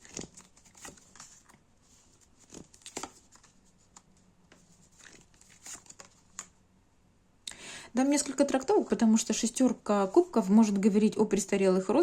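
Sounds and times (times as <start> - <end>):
cards rustling and clicking: 0.0 - 6.6.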